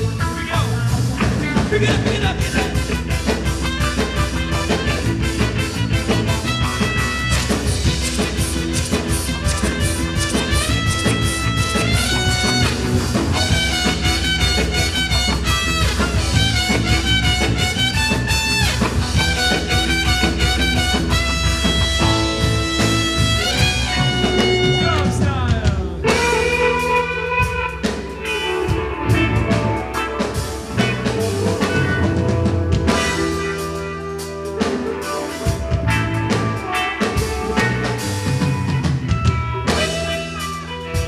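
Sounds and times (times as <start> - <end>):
drum kit: 0.0 - 41.0
electric guitar run: 1.1 - 25.2.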